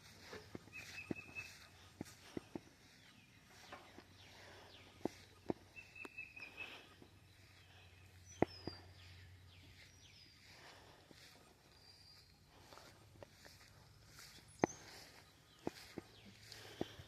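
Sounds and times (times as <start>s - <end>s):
birds chirping faintly: 0.0s - 17.0s.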